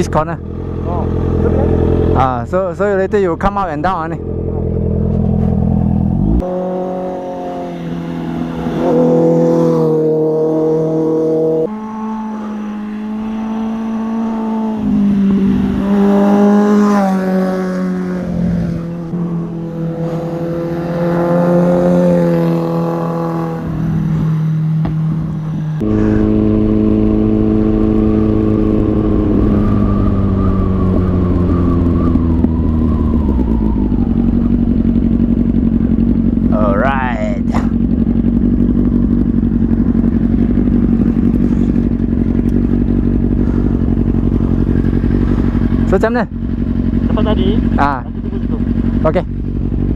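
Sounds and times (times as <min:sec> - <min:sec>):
motorcycle engine revving: 0:00.0 - 0:49.9.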